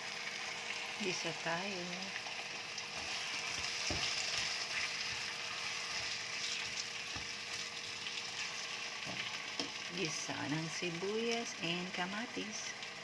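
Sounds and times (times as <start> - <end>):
onion and tomato sizzling: 0.0 - 13.0.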